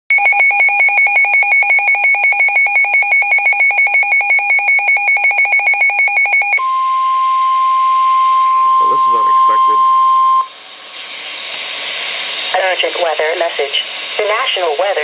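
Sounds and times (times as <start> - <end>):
electronic alarm beeping rapidly: 0.1 - 6.6
steady alarm tone: 0.1 - 10.6.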